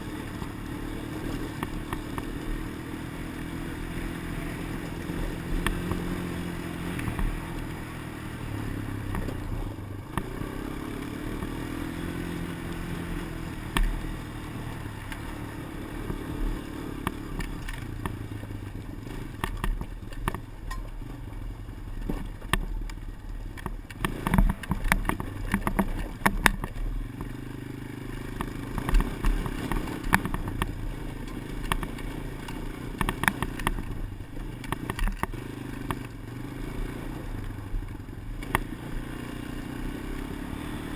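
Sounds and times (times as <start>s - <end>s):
sharp irregular clicks: 13.7s - 14.0s, 19.3s - 21.0s, 22.0s - 27.4s, 28.4s - 34.0s, 34.6s - 36.2s.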